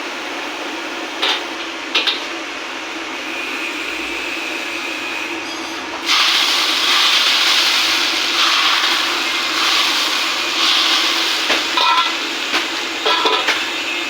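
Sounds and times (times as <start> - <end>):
food sizzling in hot oil: 6.0 - 14.0.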